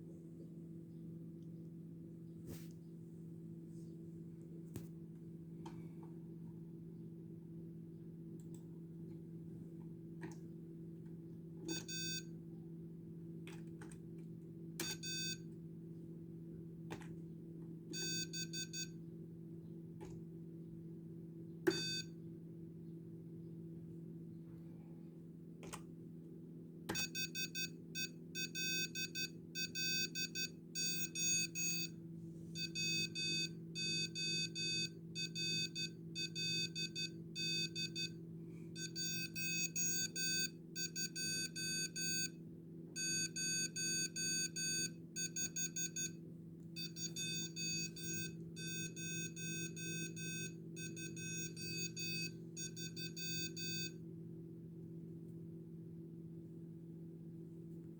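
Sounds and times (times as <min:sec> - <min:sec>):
steady low hum: 0:00.0 - 0:55.5
morse code beeps: 0:18.0 - 0:18.9, 0:27.0 - 0:31.9, 0:32.6 - 0:38.1, 0:38.8 - 0:42.3, 0:43.0 - 0:46.1, 0:46.8 - 0:53.9.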